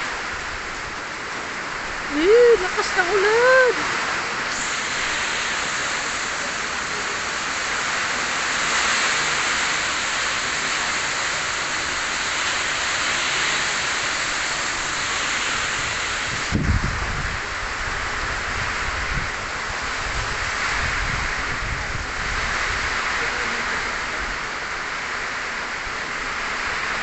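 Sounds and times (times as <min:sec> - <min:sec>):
heavy rain pouring: 0:00.0 - 0:27.0.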